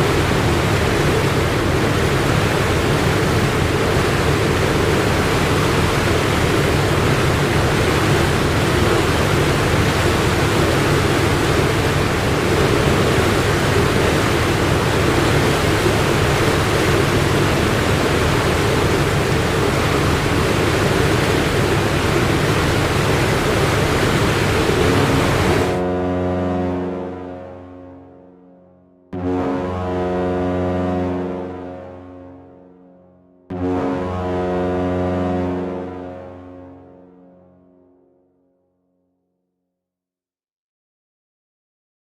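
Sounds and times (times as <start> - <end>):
rushing water: 0.0 - 25.8
wind: 0.0 - 27.0
ship engine hum: 0.0 - 28.6, 29.2 - 37.8.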